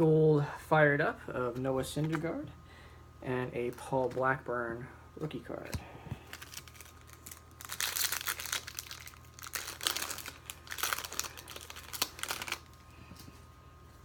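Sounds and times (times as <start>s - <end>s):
foil wrapper crinkling: 6.2s - 12.9s.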